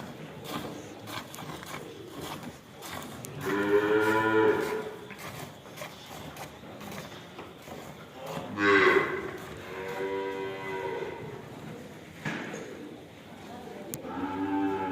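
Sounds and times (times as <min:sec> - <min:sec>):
cattle mooing: 0:03.4 - 0:05.0, 0:08.5 - 0:11.3, 0:14.0 - 0:14.9.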